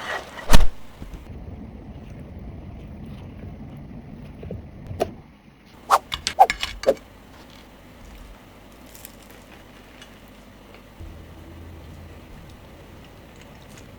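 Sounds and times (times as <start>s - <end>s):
low background hum: 0.0s - 13.9s
crusty bread crunching: 7.3s - 11.0s.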